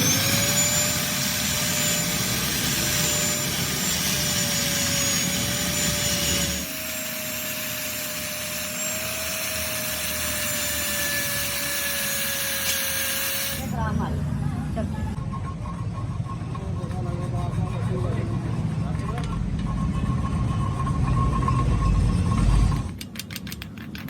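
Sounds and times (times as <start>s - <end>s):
machine tool whining: 0.0s - 13.9s.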